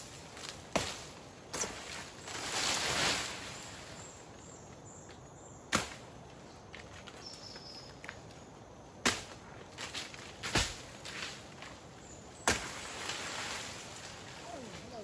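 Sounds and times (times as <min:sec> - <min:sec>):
swishing rustle: 0:01.6 - 0:04.0.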